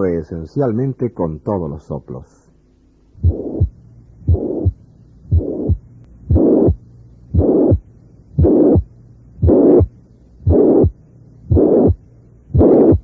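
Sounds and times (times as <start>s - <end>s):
heart sound clicks: 3.2s - 7.8s, 8.4s - 13.0s
blowing heart murmur: 3.2s - 13.0s.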